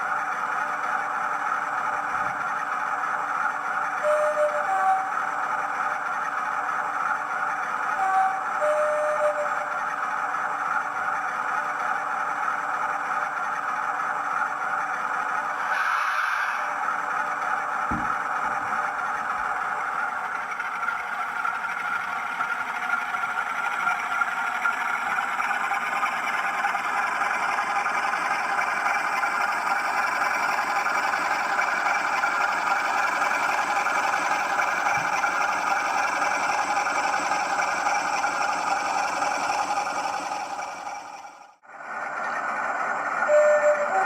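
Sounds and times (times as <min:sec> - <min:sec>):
model locomotive engine sound: 0:00.0 - 0:44.0.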